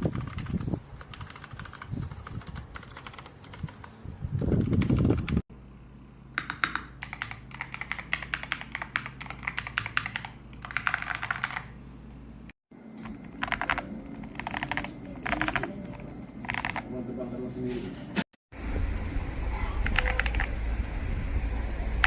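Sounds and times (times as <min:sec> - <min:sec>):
mechanical keyboard typing: 0:00.0 - 0:05.4, 0:06.4 - 0:11.7, 0:13.0 - 0:16.9, 0:19.8 - 0:20.5.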